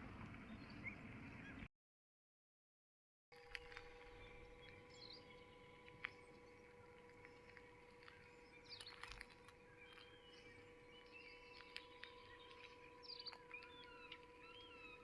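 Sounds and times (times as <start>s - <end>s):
faint steady hum: 3.4s - 15.0s
faint bird chirps: 3.6s - 15.0s.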